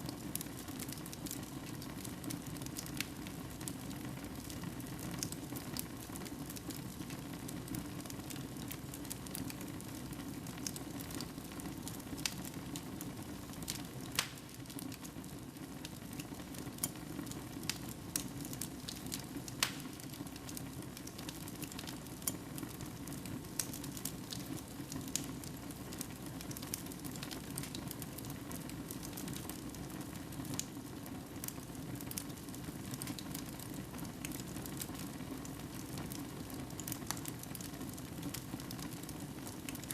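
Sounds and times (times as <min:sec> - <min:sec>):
fire crackling and popping: 0:00.0 - 0:39.9
low rumble of flames: 0:00.1 - 0:39.9.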